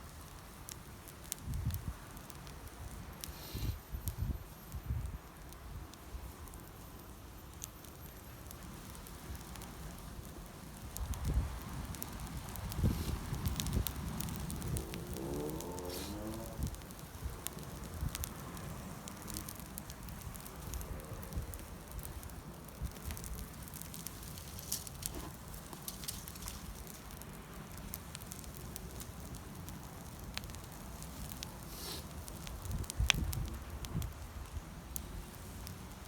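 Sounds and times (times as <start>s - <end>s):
campfire crackling and popping: 0.0s - 36.0s.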